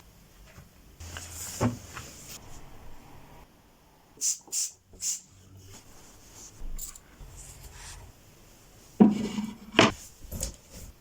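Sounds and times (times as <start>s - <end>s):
household handling sounds: 0.4s - 2.7s
spray bottle squirts: 4.2s - 5.2s.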